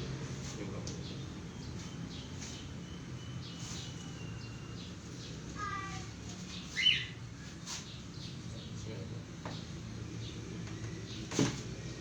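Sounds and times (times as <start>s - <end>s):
small bird chirping: 1.0s - 8.8s.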